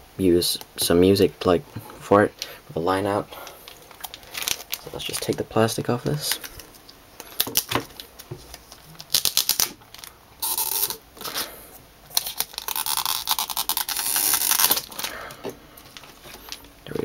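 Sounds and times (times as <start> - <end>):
plastic wrapping crinkling: 3.3 - 11.5, 12.1 - 17.0.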